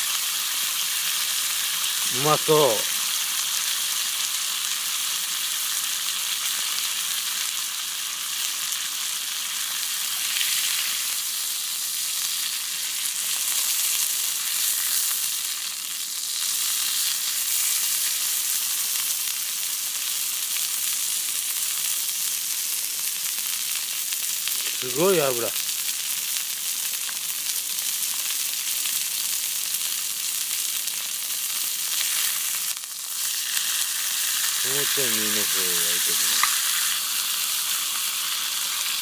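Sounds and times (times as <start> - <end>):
meat sizzling in fat: 0.0 - 39.0.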